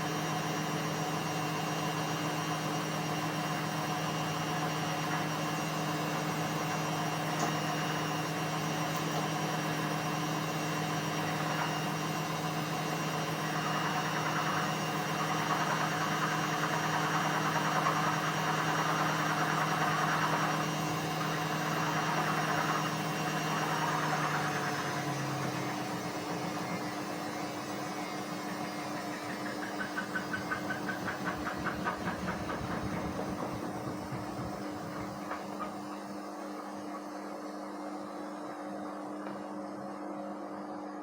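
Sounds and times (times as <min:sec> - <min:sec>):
washing machine motor hum: 0:00.0 - 0:41.0
rhythmic pulsing: 0:17.0 - 0:36.0.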